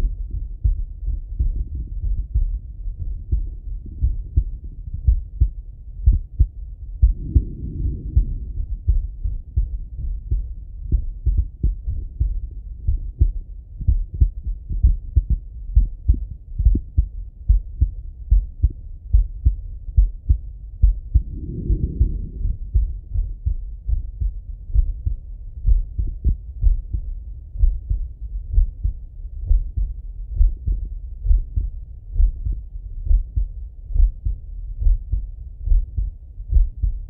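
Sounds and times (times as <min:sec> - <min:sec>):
heartbeat through stethoscope: 0:00.0 - 0:37.0
soft breath: 0:07.0 - 0:09.1, 0:21.1 - 0:23.0.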